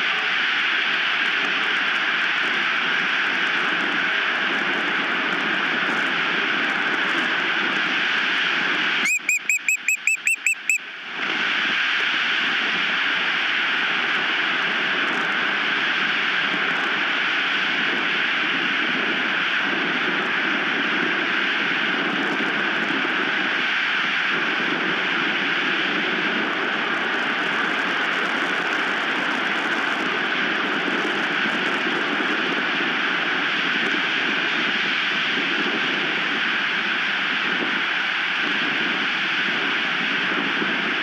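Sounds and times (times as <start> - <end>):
osprey whistled chirps: 9.0 - 10.8
strong wind on microphone: 11.2 - 41.0.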